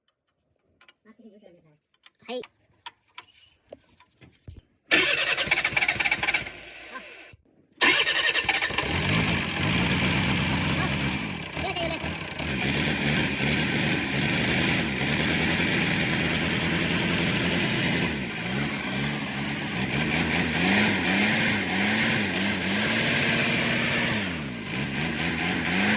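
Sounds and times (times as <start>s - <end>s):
diesel engine running: 7.8s - 25.9s.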